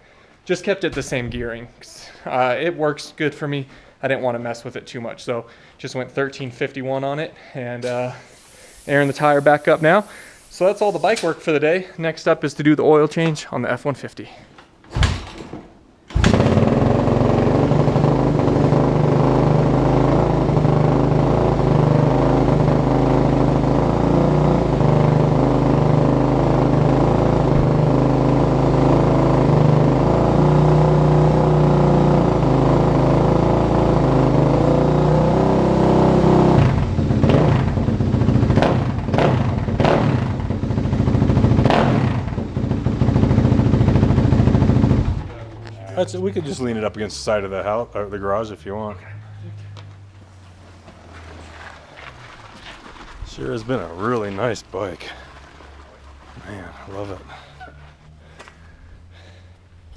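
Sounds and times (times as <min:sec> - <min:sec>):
stuttering motor clatter: 0:16.1 - 0:45.5.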